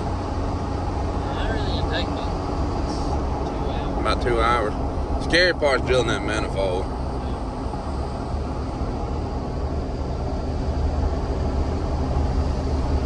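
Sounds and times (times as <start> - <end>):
diesel engine drone from cab: 0.0 - 13.0.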